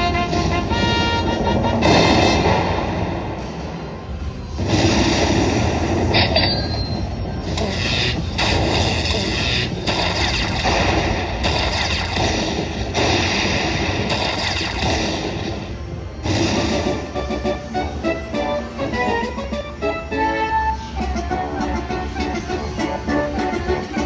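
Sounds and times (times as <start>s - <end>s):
slot machine sounds: 0.0s - 2.5s, 14.1s - 16.0s.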